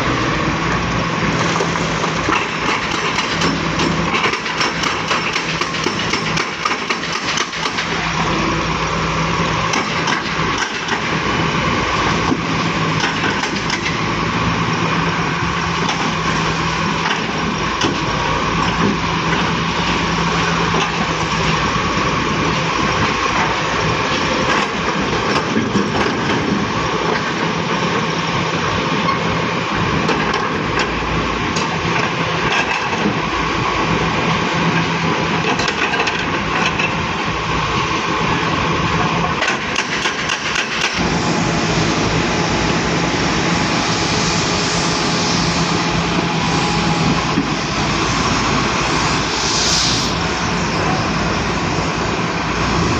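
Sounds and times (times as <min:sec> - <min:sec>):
excavator diesel engine running: 0:00.0 - 0:24.4.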